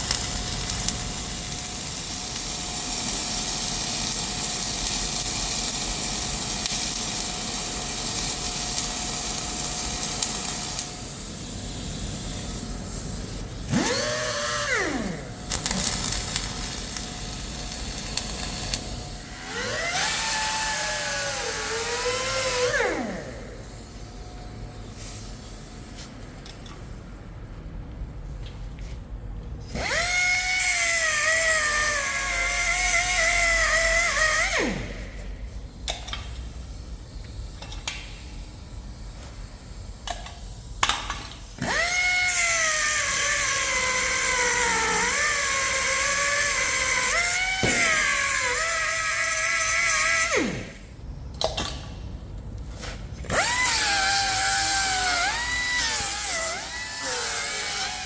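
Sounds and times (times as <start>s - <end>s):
angle grinder whining: 41.6s - 50.7s, 53.3s - 58.0s.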